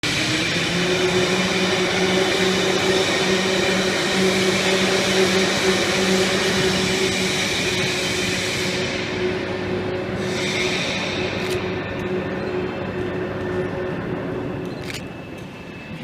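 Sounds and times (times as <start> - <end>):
machine hum: 0.0 - 16.0
hydraulic hiss: 4.0 - 11.7.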